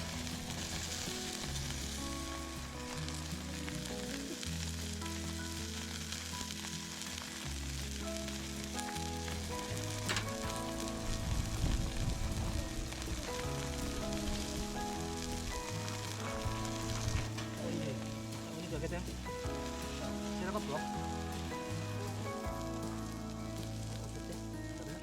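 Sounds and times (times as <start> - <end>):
food sizzling in frying: 0.0 - 25.0.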